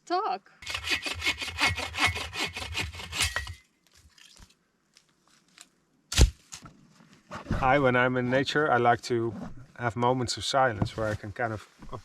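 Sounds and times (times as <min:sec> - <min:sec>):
hand saw cutting wood: 0:00.6 - 0:03.6.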